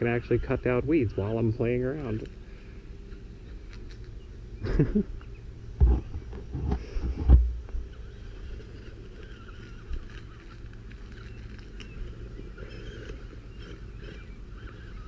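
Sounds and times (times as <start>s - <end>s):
trimmer blade running through brush: 5.8s - 15.0s.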